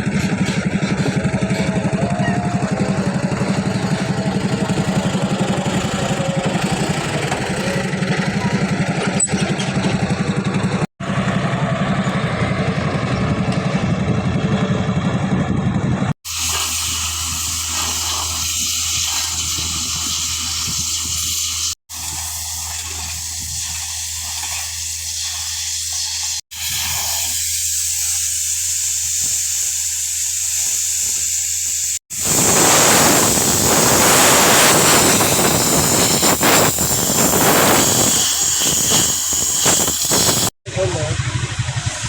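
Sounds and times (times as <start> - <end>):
machinery engine running: 0.0 - 42.0
hissing noise: 16.3 - 40.6
loud rushing hiss: 16.3 - 40.6.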